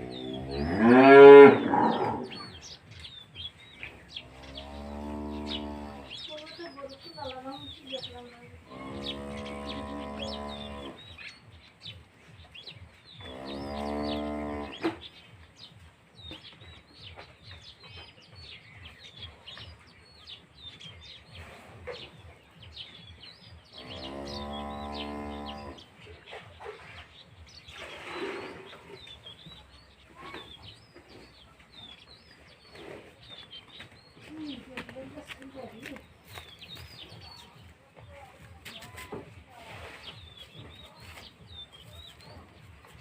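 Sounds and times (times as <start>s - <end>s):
cows mooing: 0.0s - 2.6s, 4.2s - 6.2s, 8.6s - 11.0s, 13.2s - 14.9s, 23.7s - 25.9s
small birds chirping: 0.0s - 43.0s.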